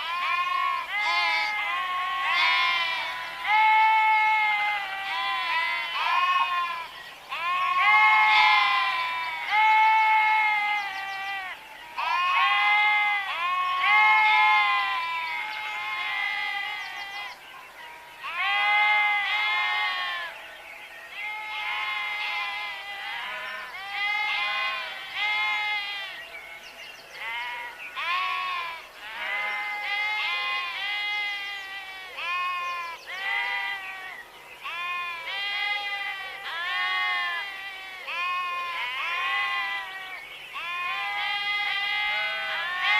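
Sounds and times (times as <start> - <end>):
sheep bleating: 0.0 - 17.4, 18.2 - 20.4, 21.2 - 26.2, 27.2 - 42.9.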